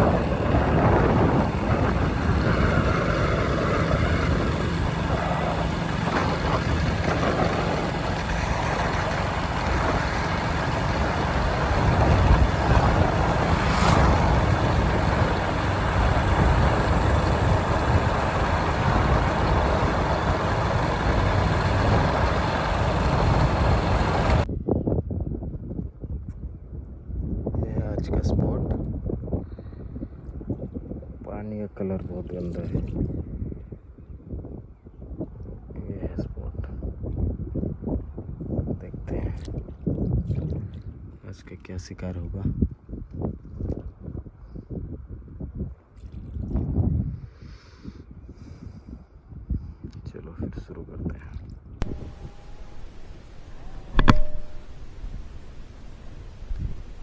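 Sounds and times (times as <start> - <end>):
rushing noise: 0.0 - 24.4, 51.8 - 57.0
vehicle engine running: 0.0 - 24.5, 51.8 - 57.0.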